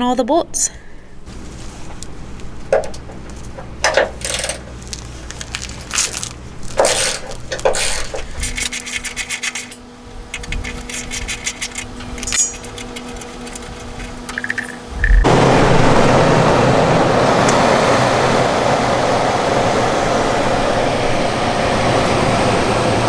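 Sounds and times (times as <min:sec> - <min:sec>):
faint steady hum: 0:00.0 - 0:17.7
metal tools clinking and scraping: 0:02.7 - 0:15.2.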